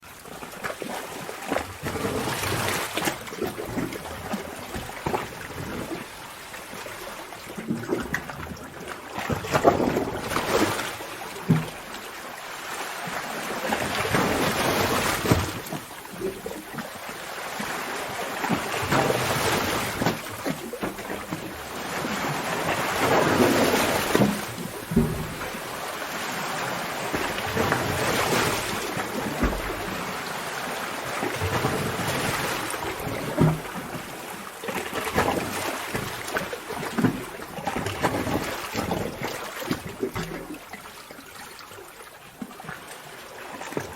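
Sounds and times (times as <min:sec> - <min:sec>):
sea water surging in a cave: 0:00.0 - 0:43.9
water splashing against rock: 0:13.0 - 0:42.9.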